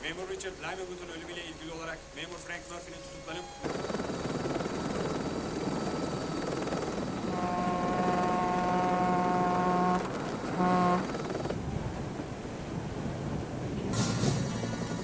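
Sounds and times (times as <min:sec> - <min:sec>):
high turbine whine: 0:00.0 - 0:12.5, 0:13.9 - 0:15.0
helicopter rotor and engine: 0:00.3 - 0:11.6
loud horn-like buzzing tone: 0:07.0 - 0:11.6.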